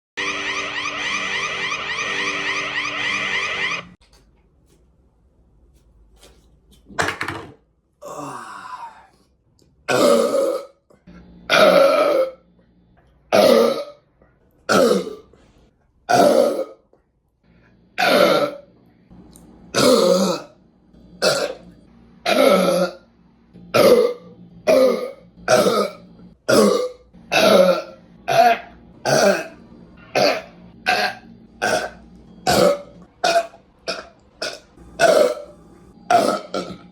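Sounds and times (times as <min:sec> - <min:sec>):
person belching: 0:08.0 - 0:09.1, 0:09.9 - 0:10.8, 0:11.5 - 0:12.4, 0:13.3 - 0:14.0, 0:14.7 - 0:15.3, 0:16.1 - 0:16.8, 0:18.0 - 0:18.7, 0:19.7 - 0:20.6, 0:21.2 - 0:23.1, 0:23.7 - 0:36.9.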